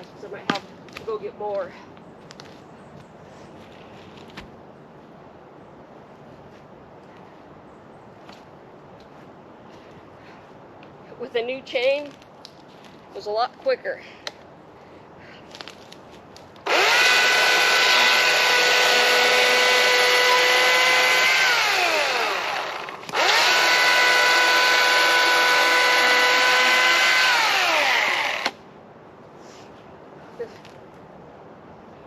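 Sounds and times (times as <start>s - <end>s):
chainsaw running: 16.6s - 28.6s.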